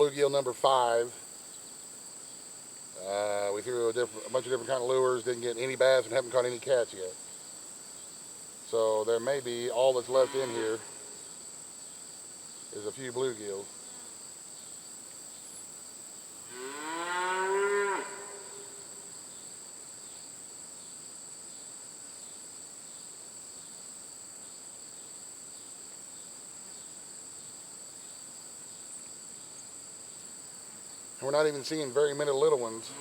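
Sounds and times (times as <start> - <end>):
cow mooing: 10.1 - 11.1, 16.5 - 18.8, 32.7 - 33.0.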